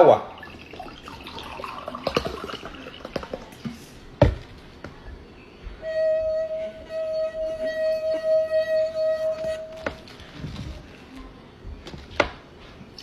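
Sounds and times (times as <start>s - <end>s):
steady pitched tone: 5.7s - 10.1s.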